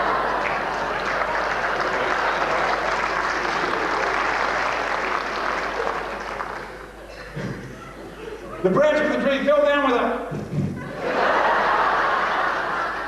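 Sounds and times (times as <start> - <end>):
audience applauding: 0.0 - 7.7.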